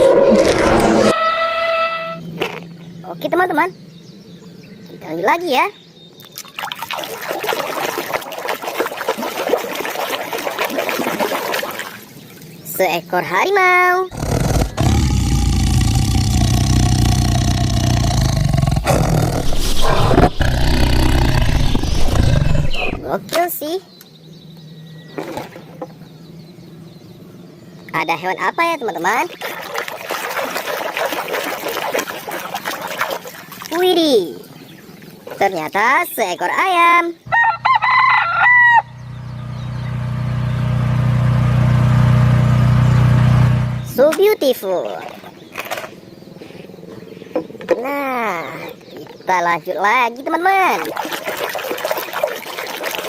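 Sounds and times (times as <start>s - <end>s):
tiger roaring: 14.1s - 23.1s
rooster crowing: 37.3s - 39.0s
low mechanical hum: 38.8s - 43.9s.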